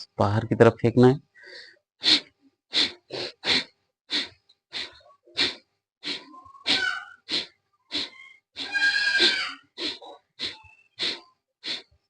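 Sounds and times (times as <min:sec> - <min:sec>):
quiet inhalations: 0:01.3 - 0:06.7, 0:07.3 - 0:08.6, 0:09.8 - 0:12.0
person exhaling sharply through nose: 0:01.4 - 0:11.9.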